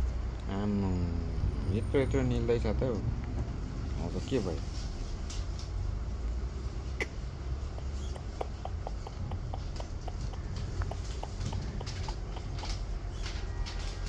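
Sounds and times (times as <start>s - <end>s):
steady low hum: 2.6s - 13.8s
birds feeding clicks: 7.7s - 14.0s.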